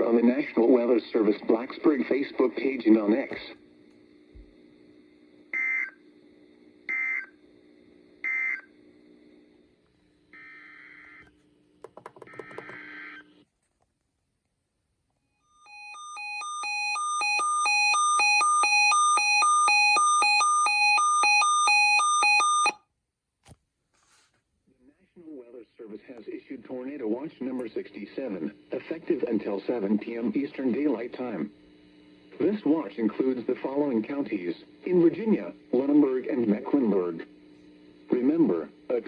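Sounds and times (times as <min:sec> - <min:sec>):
faint radio hum: 0:00.0 - 0:11.3, 0:24.1 - 0:39.0.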